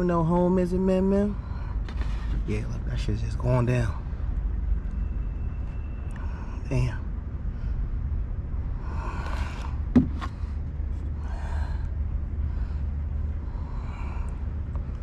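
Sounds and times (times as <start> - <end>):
low background rumble: 0.0 - 15.0
heavy breaths: 7.4 - 15.0
sharp knock: 9.9 - 10.3.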